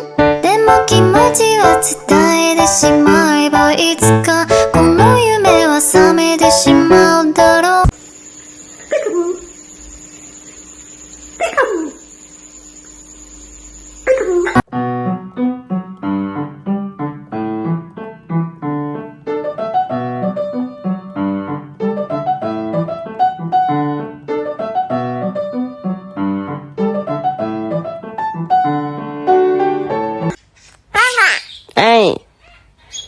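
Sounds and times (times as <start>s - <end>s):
lively piano tune: 0.0s - 7.9s, 14.6s - 30.4s.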